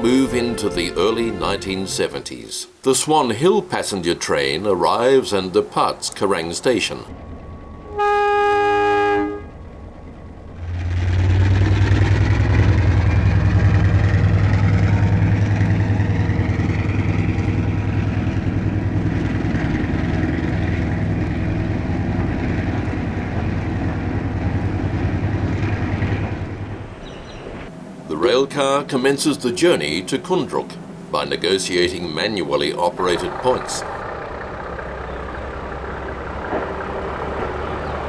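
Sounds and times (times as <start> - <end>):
train horn blast: 0.0 - 2.3, 7.7 - 9.7
diesel locomotive engine pulsing: 0.0 - 2.5, 3.3 - 27.0, 27.6 - 38.0
faint rising whine: 27.7 - 34.1.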